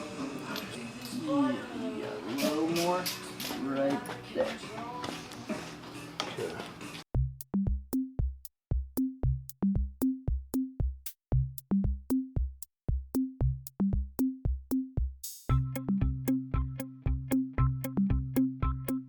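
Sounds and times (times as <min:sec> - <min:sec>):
synth and bass notes: 0:07.2 - 0:08.3, 0:09.0 - 0:12.4, 0:13.1 - 0:19.0
drum machine beat: 0:07.2 - 0:19.0.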